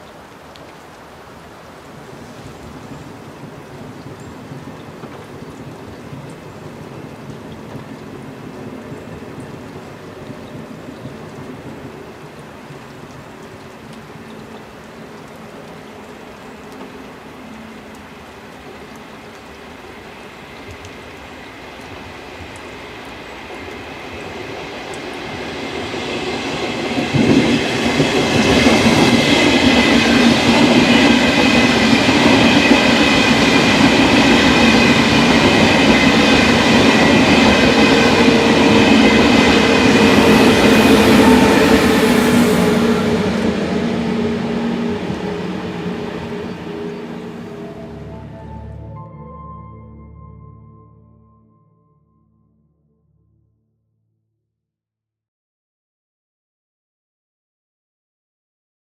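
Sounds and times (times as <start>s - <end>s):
rain: 0.0s - 48.9s
train passing: 3.2s - 49.3s
wheels rumbling: 25.7s - 49.0s.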